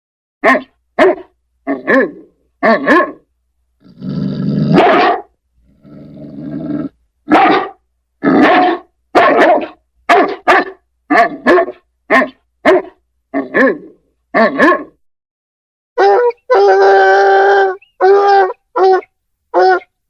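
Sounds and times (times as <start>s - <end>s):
dog barking loudly: 0.4s - 3.3s, 4.7s - 5.4s, 7.3s - 15.0s, 16.0s - 17.0s, 18.0s - 19.9s
dog growling low: 3.8s - 4.8s, 5.6s - 7.0s.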